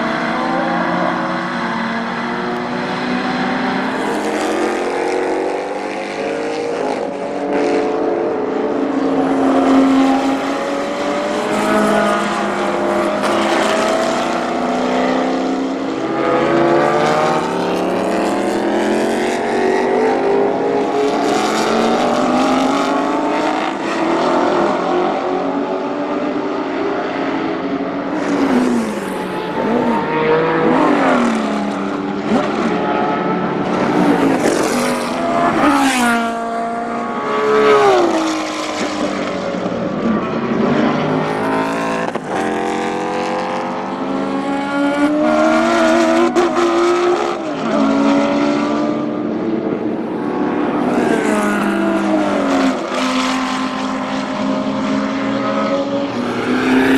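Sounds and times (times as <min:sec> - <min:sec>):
racing car engines revving: 0:00.0 - 0:56.9.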